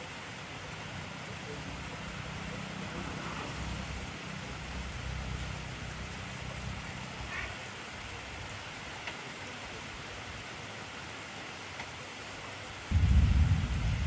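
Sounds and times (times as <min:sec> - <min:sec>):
heavy rain falling: 0:00.0 - 0:14.0
low rumble: 0:12.9 - 0:14.0.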